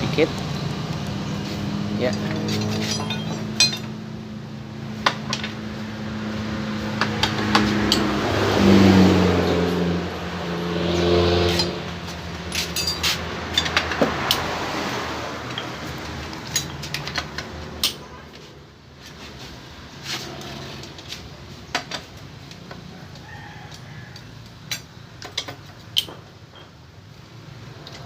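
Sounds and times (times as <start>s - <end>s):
metal tools clinking: 2.0s - 4.0s, 11.4s - 14.4s, 15.5s - 18.2s.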